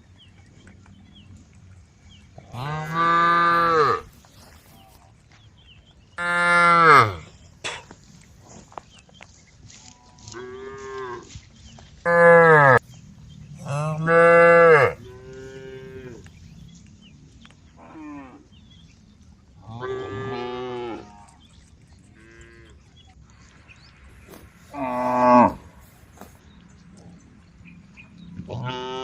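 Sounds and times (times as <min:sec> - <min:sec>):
cows mooing: 0:02.5 - 0:04.2, 0:06.2 - 0:07.3, 0:12.1 - 0:12.8, 0:13.6 - 0:16.3, 0:19.6 - 0:21.3, 0:24.7 - 0:25.9, 0:28.5 - 0:29.0.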